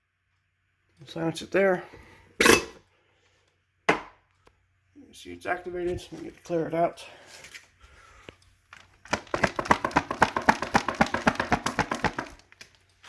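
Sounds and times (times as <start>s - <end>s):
rapid even tapping: 9.1s - 12.4s.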